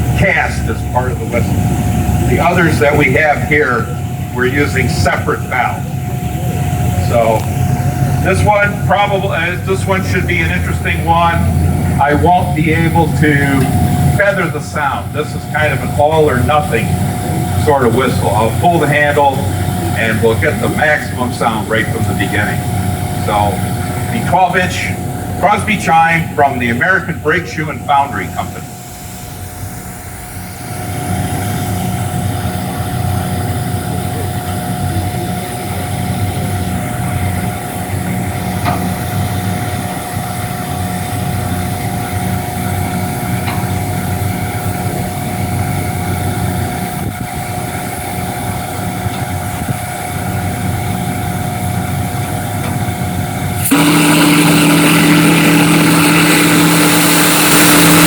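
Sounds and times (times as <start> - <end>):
steam whistle chord: 53.6 - 58.0.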